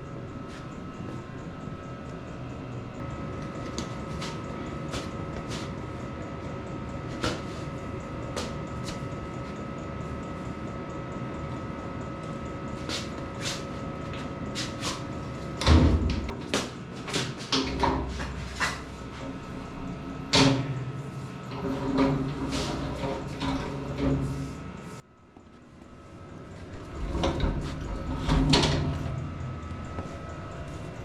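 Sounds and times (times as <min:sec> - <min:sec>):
steady hum: 0:00.0 - 0:31.0.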